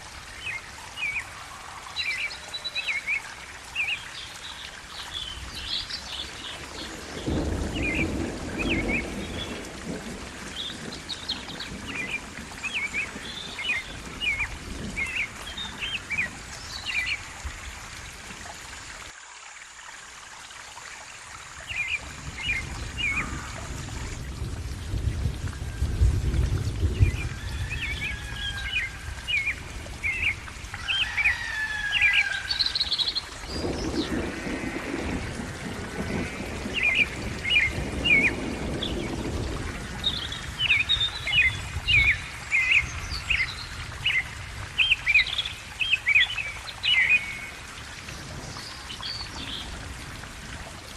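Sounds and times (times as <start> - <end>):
rain falling: 0.0 - 50.9
low rolling thunder: 5.4 - 16.5, 22.0 - 30.7, 33.4 - 44.6.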